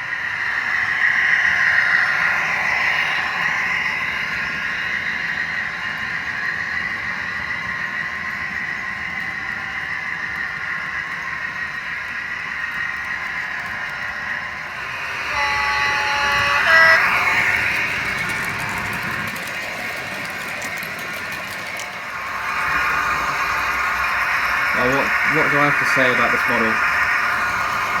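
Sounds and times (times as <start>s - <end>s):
model diesel engine sound: 14.1s - 28.0s
two-tone horn: 14.6s - 19.6s, 22.0s - 28.0s.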